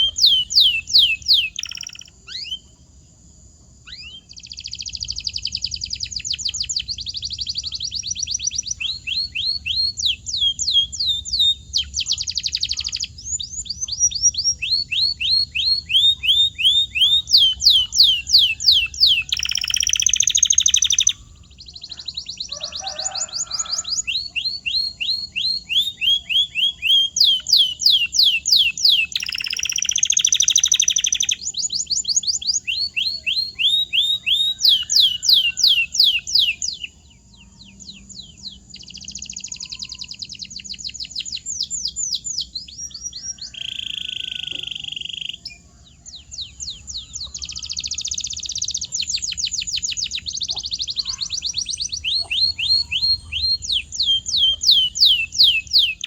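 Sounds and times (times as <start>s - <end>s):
canary singing: 0.0s - 2.8s, 3.8s - 56.0s.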